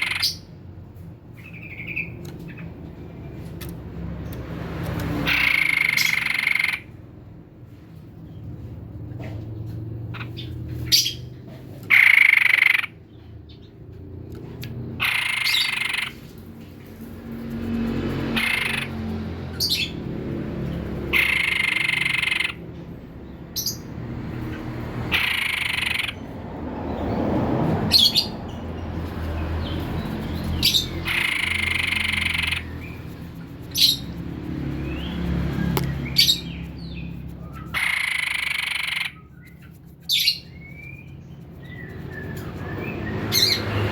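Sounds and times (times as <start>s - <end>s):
bird singing: 0.0s - 0.5s, 5.2s - 6.9s, 14.9s - 16.4s, 17.4s - 20.0s, 20.6s - 23.9s, 25.1s - 26.3s, 27.9s - 43.9s.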